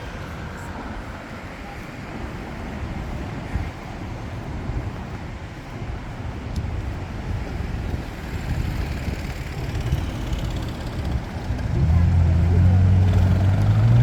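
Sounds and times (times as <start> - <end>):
low rumble of passing cars: 6.8 - 14.0.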